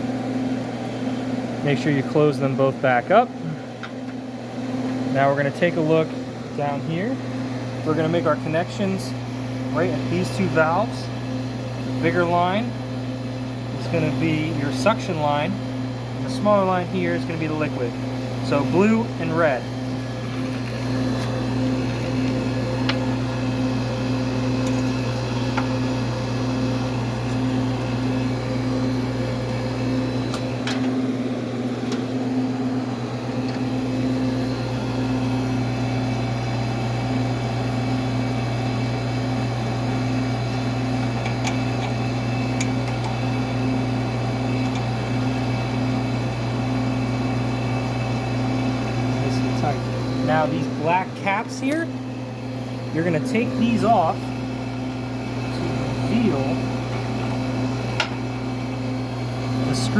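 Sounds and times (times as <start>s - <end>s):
air conditioner unit humming: 0.0s - 59.9s.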